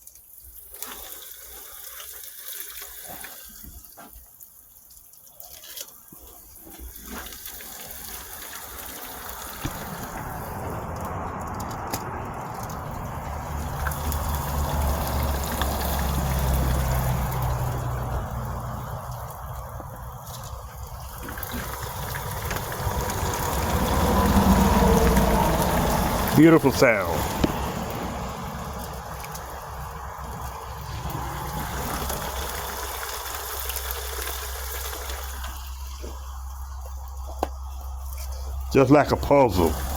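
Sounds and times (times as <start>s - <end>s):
meat frying in hot grease: 6.2s - 11.4s, 12.1s - 39.9s
low rumble: 9.8s - 26.4s, 27.1s - 33.9s.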